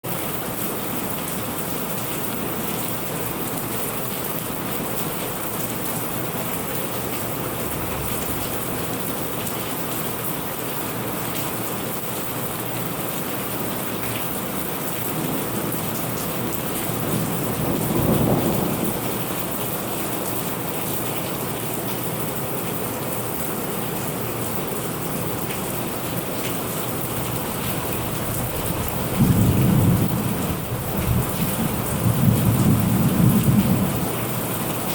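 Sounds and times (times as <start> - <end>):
heavy rain falling: 0.0 - 34.9
thunder rumbling: 7.2 - 9.3, 15.2 - 19.2, 27.2 - 34.3.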